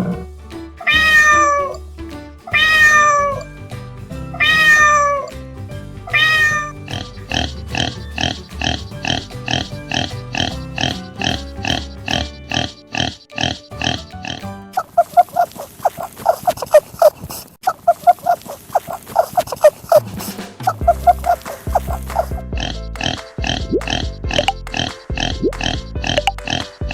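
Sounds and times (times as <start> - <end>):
background music: 0.0 - 15.4, 19.9 - 26.9
cat meowing: 0.8 - 1.8, 2.5 - 3.4, 4.4 - 5.3, 6.1 - 8.4.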